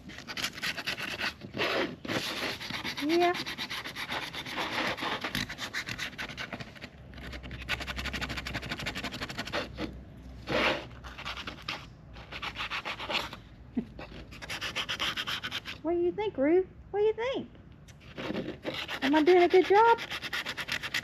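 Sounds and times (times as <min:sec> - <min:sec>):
loud sandpaper scrape: 0:00.0 - 0:13.4, 0:14.2 - 0:15.8, 0:18.0 - 0:21.0
sandpaper scratching by hand: 0:00.0 - 0:13.4, 0:14.3 - 0:15.8, 0:18.0 - 0:21.0.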